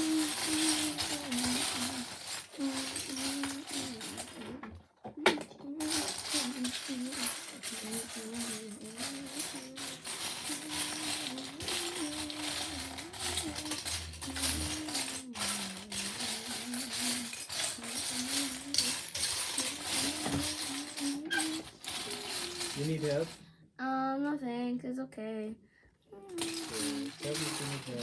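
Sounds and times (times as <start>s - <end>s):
plastic pieces clattering and clicking: 0.0s - 23.4s, 26.3s - 28.0s.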